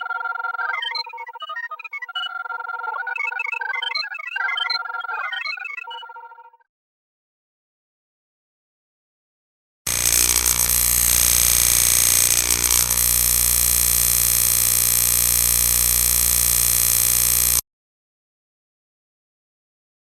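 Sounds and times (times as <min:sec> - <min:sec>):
electronic sci-fi drone: 0:09.9 - 0:17.6.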